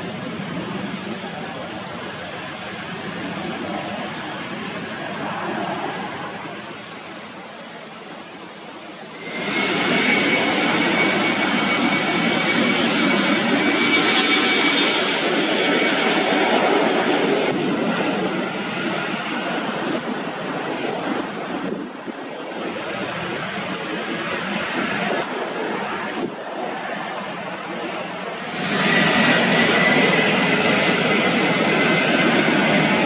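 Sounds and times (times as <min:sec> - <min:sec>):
jet airliner passing: 0:00.0 - 0:33.0.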